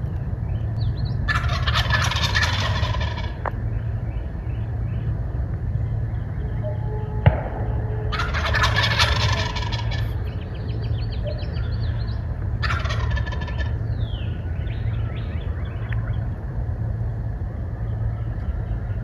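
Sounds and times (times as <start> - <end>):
steady low rumble: 0.0 - 19.0
turkey gobbling: 1.3 - 3.5, 8.1 - 10.2, 12.6 - 13.8
small birds chirping: 10.1 - 12.8, 13.5 - 16.4.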